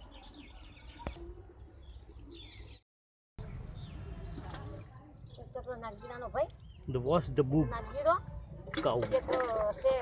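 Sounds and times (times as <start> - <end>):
small birds chirping: 0.0 - 2.8, 3.4 - 10.0.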